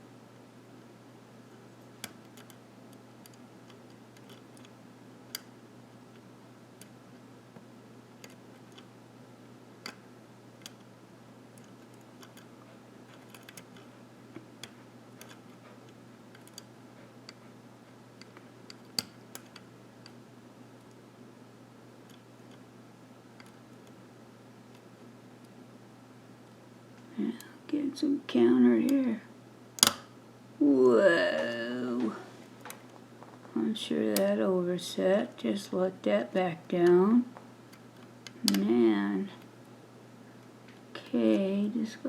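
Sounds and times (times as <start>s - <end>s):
steady low hum: 0.0s - 42.0s
lock pick clicking in lock: 29.8s - 30.1s.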